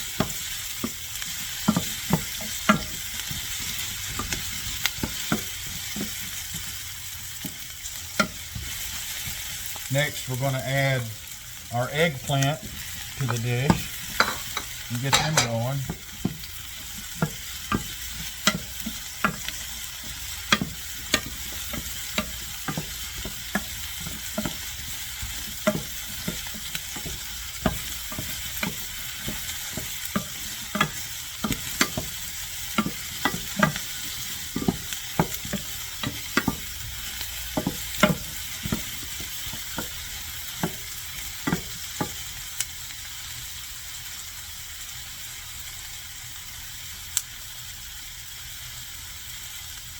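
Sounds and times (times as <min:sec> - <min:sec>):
vegetables sizzling in a pan: 0:00.0 - 0:49.9
utensil knocking against pan: 0:12.3 - 0:42.2.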